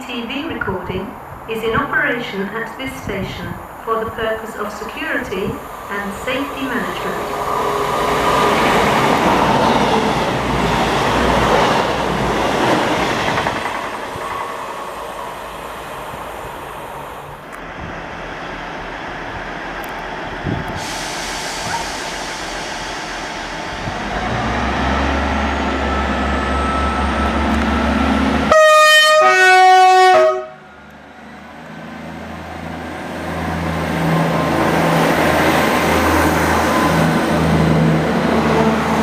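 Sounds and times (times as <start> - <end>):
diesel locomotive engine rumble: 0.0 - 39.0
two-tone train horn: 28.5 - 30.7, 38.4 - 39.0.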